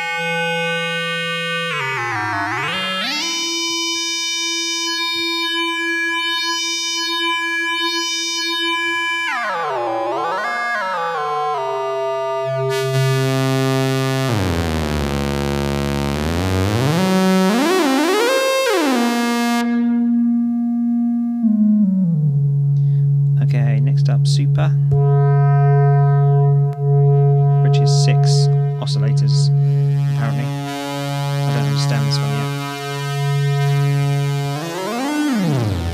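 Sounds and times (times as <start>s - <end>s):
sustained synth tone: 20.0s - 35.6s.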